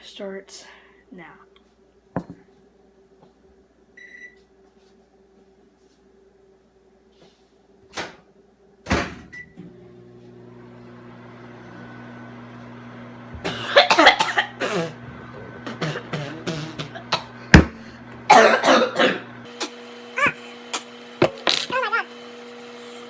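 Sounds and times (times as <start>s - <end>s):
microwave oven humming: 8.9s - 23.0s
man coughing and sputtering: 13.4s - 17.4s, 18.3s - 19.3s.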